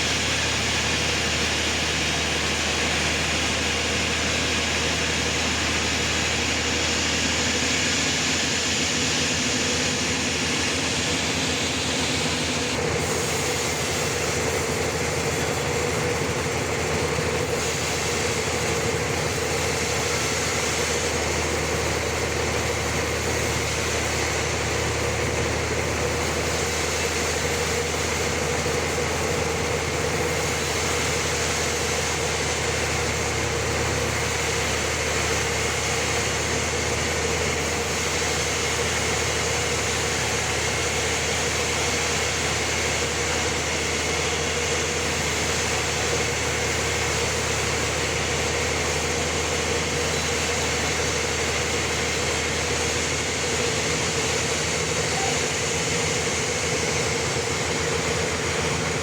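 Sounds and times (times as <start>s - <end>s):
band sawmill running: 0.0s - 59.0s.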